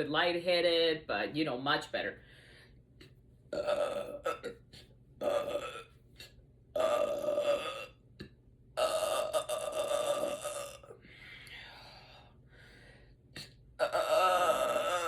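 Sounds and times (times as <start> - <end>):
woman belching: 3.5 - 4.6, 5.2 - 5.9, 6.8 - 8.0, 8.8 - 11.0, 13.8 - 15.0.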